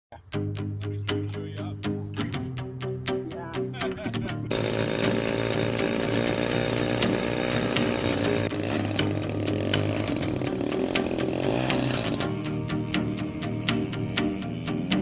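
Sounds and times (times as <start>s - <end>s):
model plane engine high speed: 4.5s - 13.8s.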